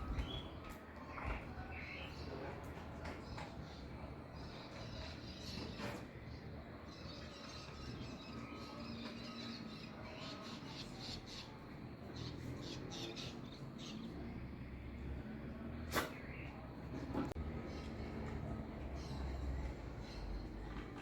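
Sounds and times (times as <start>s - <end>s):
songbirds chirping and singing: 0.0s - 21.0s.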